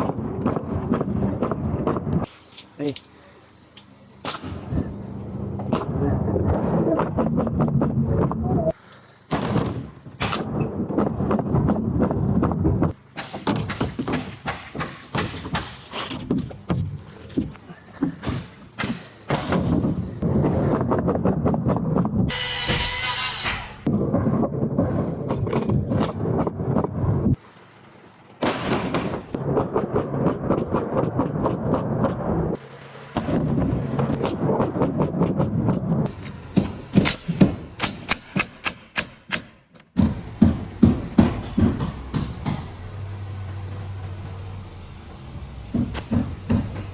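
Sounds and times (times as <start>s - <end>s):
low steady hum: 0.1s - 8.7s, 40.0s - 46.9s
sharp knocks on wood: 36.1s - 42.9s, 45.7s - 46.9s
clattering on plywood: 40.0s - 42.9s.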